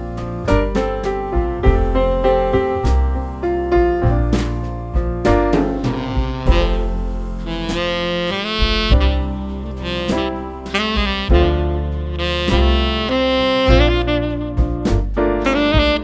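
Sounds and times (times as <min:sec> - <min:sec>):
light percussion: 0:00.0 - 0:16.0
low bass line: 0:00.0 - 0:16.0
saxophone melody: 0:05.6 - 0:16.0.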